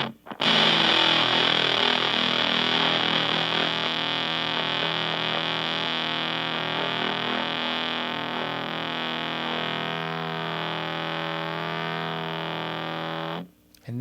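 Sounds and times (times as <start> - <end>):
fuzzed electric guitar chord: 0.0 - 13.5
amp hum and fuzz hiss: 0.0 - 14.0.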